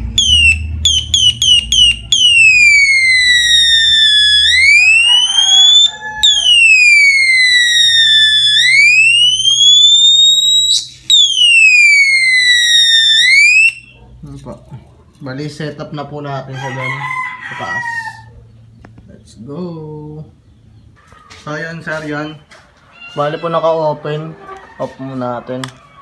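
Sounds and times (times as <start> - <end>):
electronic police siren: 0.0 - 14.0.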